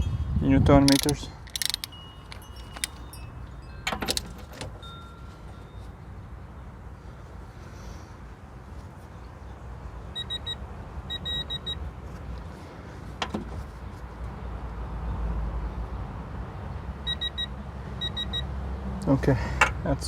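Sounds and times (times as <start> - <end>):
sharp click: 0.9 - 3.1.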